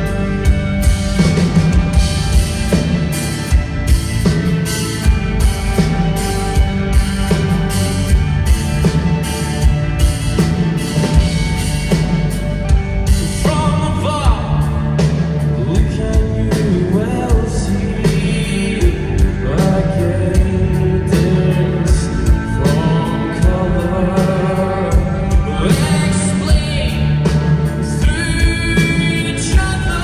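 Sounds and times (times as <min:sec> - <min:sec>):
drum kit beat: 0:00.0 - 0:30.0
rock band playing live: 0:00.0 - 0:30.0
person singing: 0:15.5 - 0:30.0.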